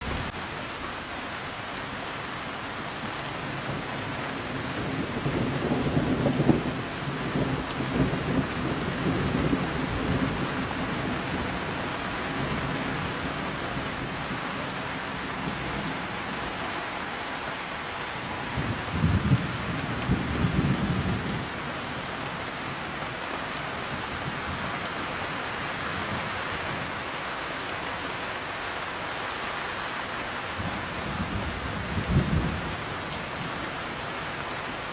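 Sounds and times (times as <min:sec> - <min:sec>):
heavy rain: 0:00.0 - 0:34.9
thunder rumbling: 0:03.6 - 0:11.8, 0:18.1 - 0:21.6.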